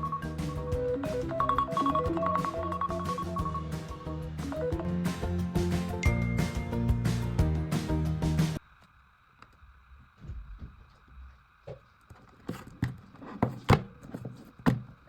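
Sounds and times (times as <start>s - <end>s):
phone ringtone: 0.0s - 4.8s
faint steady hum: 8.6s - 15.0s.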